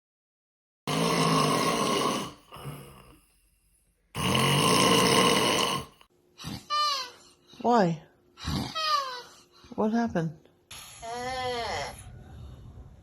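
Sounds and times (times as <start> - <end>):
person snoring: 0.9 - 3.5, 4.1 - 6.7.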